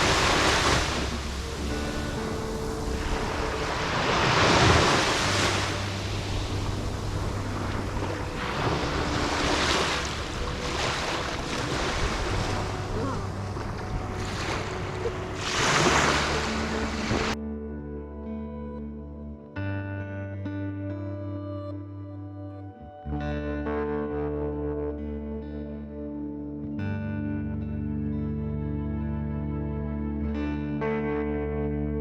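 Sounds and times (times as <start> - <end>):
sea waves washing in: 0.0 - 17.4
wind buffeting microphone: 0.0 - 17.4.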